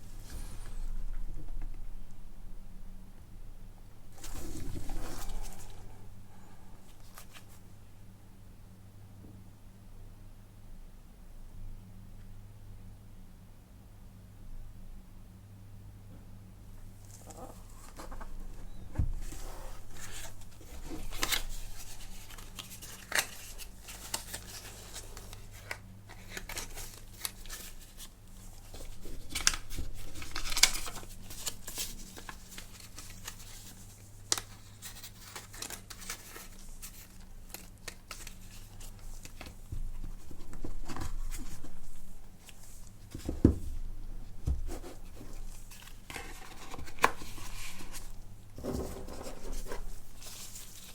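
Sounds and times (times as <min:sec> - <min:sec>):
faint low hum: 0:00.0 - 0:50.9
paper and plastic rustling: 0:04.2 - 0:05.9, 0:17.0 - 0:50.9.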